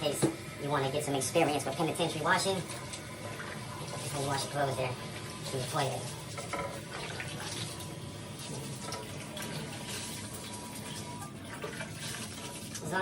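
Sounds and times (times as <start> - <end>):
toilet tank refilling: 0.0 - 13.0.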